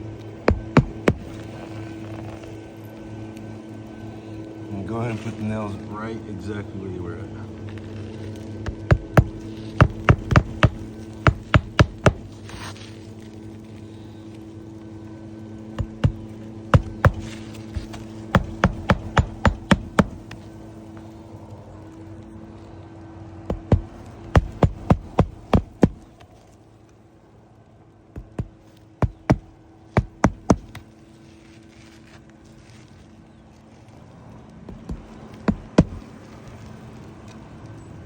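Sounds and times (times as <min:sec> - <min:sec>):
steady low hum: 0:00.0 - 0:38.0
hammer striking nails: 0:00.4 - 0:01.3, 0:08.6 - 0:12.4, 0:15.8 - 0:20.4, 0:23.5 - 0:26.1, 0:28.2 - 0:30.8, 0:34.7 - 0:36.0.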